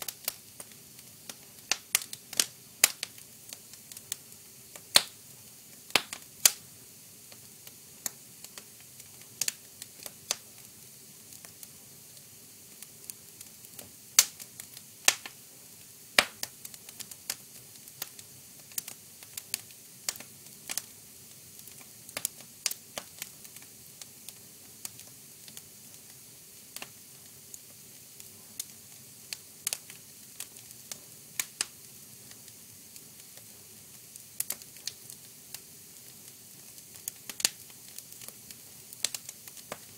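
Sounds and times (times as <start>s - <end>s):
faint steady hiss: 0.0s - 39.9s
wood fire crackling: 0.0s - 39.9s.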